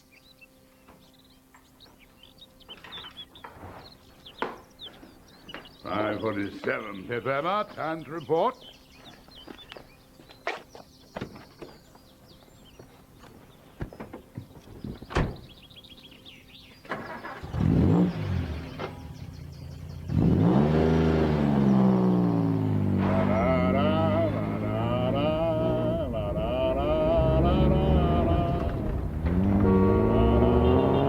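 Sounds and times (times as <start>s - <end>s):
engine starting and revving: 16.9s - 31.0s
low drone: 21.3s - 31.0s.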